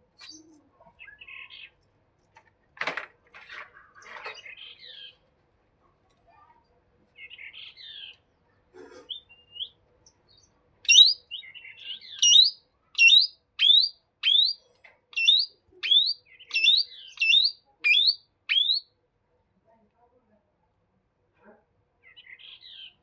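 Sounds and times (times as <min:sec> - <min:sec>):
parakeet calling: 0:10.9 - 0:11.2, 0:12.2 - 0:14.6, 0:15.2 - 0:18.8.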